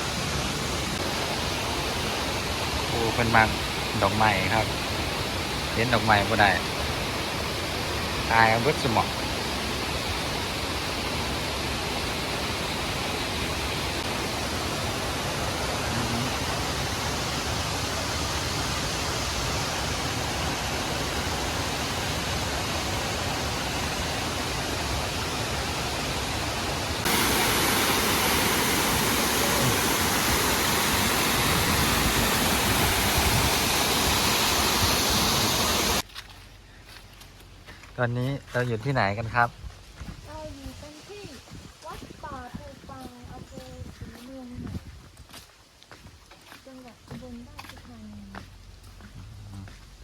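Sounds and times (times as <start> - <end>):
waterfall rushing: 0.0 - 36.0.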